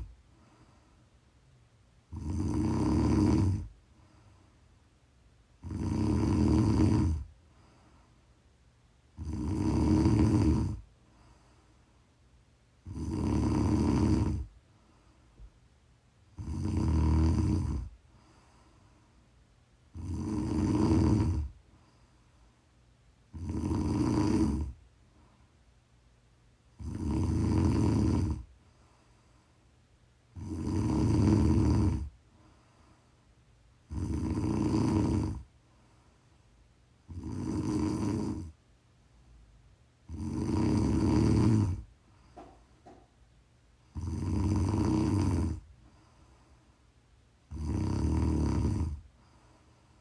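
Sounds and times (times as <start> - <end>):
quiet breathing: 0.0 - 50.0
woman snoring: 2.1 - 3.7, 5.6 - 7.3, 9.2 - 10.8, 12.8 - 14.5, 16.3 - 18.0, 19.9 - 21.6, 23.3 - 24.8, 26.8 - 28.5, 30.4 - 32.2, 33.9 - 35.5, 37.1 - 38.6, 40.1 - 42.5, 43.9 - 45.7, 47.5 - 49.1.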